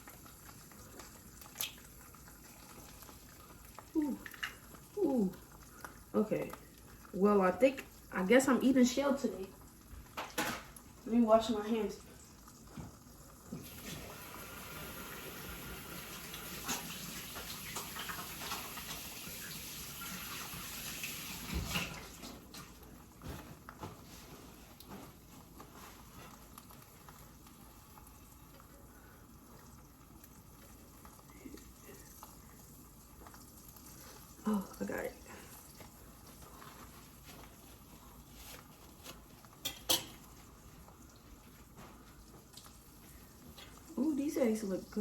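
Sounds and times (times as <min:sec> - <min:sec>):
faucet water running: 0:00.0 - 0:45.0.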